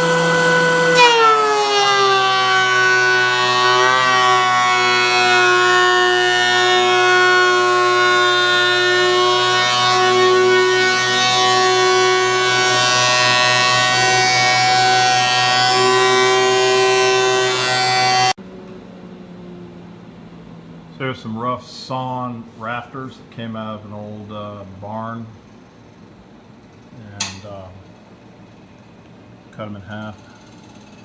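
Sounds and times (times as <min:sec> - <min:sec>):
power tool high whine: 0:00.0 - 0:19.9.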